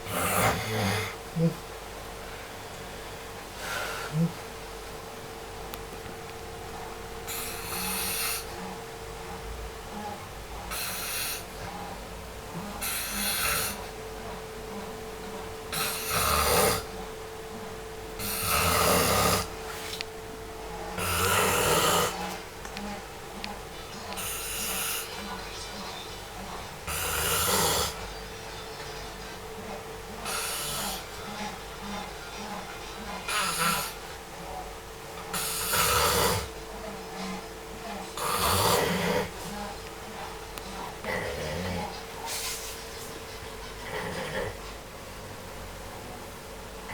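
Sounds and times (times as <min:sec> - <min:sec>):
faint steady hum: 0:00.0 - 0:46.9
person snoring: 0:00.1 - 0:01.6, 0:07.3 - 0:08.5, 0:12.8 - 0:13.9, 0:15.7 - 0:16.9, 0:18.2 - 0:19.5, 0:21.0 - 0:22.2, 0:26.9 - 0:28.0, 0:30.2 - 0:31.1, 0:35.3 - 0:36.5, 0:38.2 - 0:39.3
quiet breathing: 0:02.2 - 0:04.5, 0:07.2 - 0:09.4, 0:10.0 - 0:12.0, 0:12.6 - 0:14.1, 0:14.8 - 0:17.0, 0:24.0 - 0:34.2.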